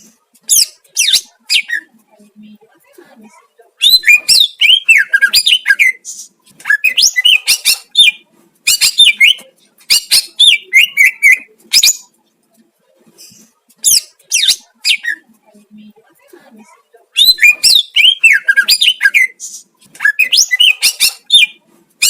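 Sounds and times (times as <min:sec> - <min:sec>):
bird singing whistles and chirps: 0:17.2 - 0:21.6.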